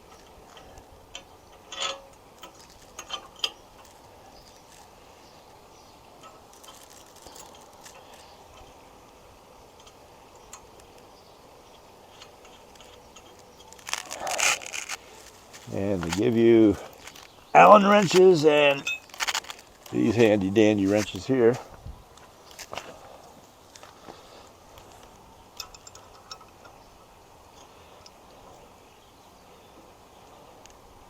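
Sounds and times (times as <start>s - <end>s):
metal hardware clicking: 0.1s - 4.6s, 11.7s - 15.0s, 25.5s - 26.9s.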